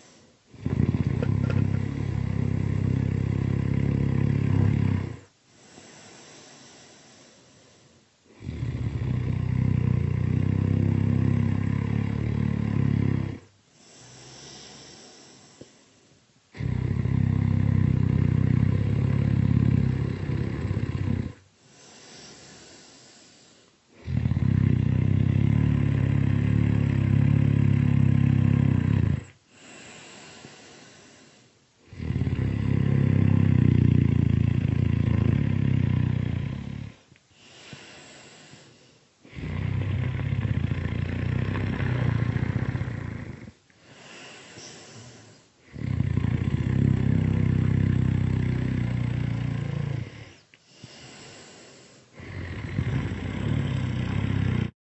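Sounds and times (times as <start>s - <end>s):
breathy exhale: 0.0s - 0.4s, 5.5s - 8.1s, 13.7s - 16.2s, 21.6s - 23.8s, 29.5s - 31.6s, 37.3s - 39.6s, 41.4s - 45.9s, 50.0s - 52.6s
loud rattling snores: 0.0s - 5.3s, 8.3s - 15.6s, 16.5s - 23.2s, 23.9s - 38.6s, 39.3s - 54.8s.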